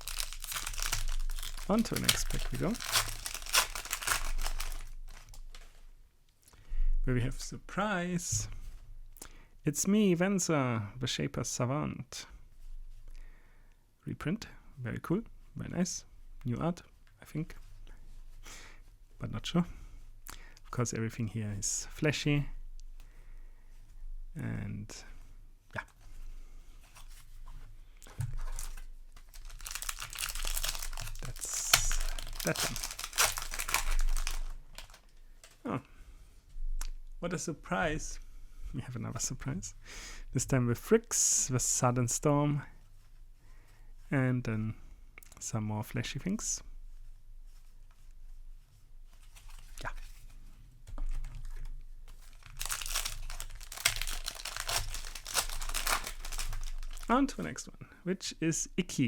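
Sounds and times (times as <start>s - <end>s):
foil wrapper crinkling: 0.0s - 5.7s, 28.1s - 35.6s, 52.1s - 57.4s.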